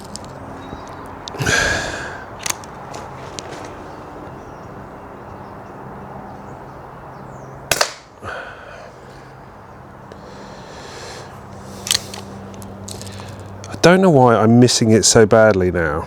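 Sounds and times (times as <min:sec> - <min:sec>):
air pistol shot crack: 0:07.7 - 0:08.2.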